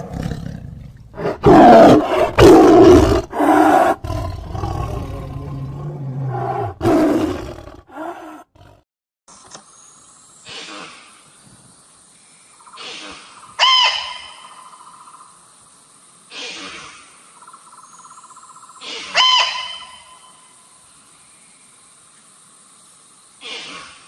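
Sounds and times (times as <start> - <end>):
animal call: 18.8 - 20.3.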